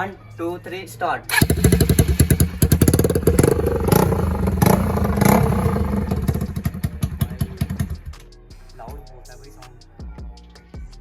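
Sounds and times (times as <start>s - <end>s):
motorcycle engine exhaust clatter: 1.3s - 8.1s.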